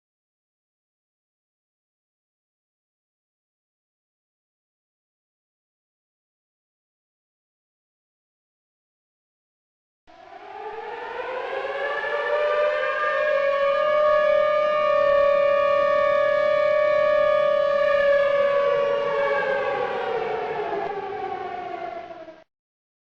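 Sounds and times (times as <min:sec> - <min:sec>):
tornado warning siren: 0:10.1 - 0:22.5.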